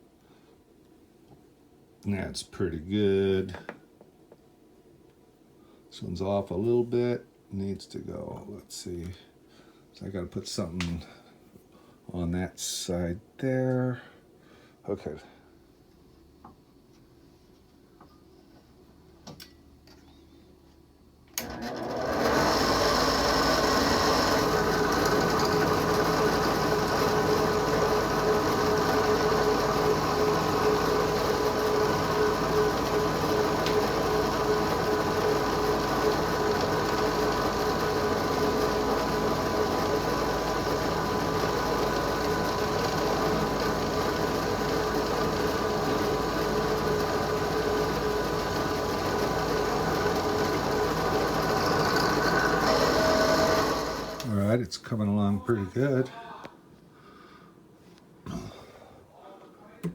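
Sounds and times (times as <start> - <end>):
drill press motor running: 21.4 - 54.3
drill press switch: 21.4 - 54.3.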